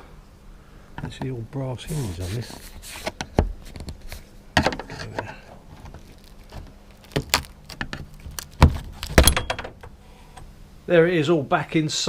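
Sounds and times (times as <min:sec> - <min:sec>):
metal parts and tools clanking: 0:09.0 - 0:09.9.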